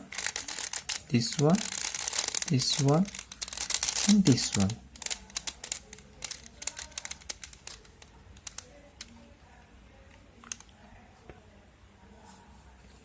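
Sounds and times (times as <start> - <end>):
puzzle cube clicking: 0.0 - 9.2.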